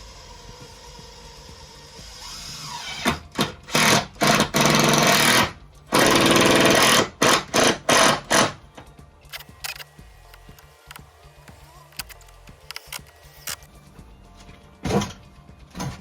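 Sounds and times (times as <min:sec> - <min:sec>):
power tool motor whining: 0:00.0 - 0:08.6.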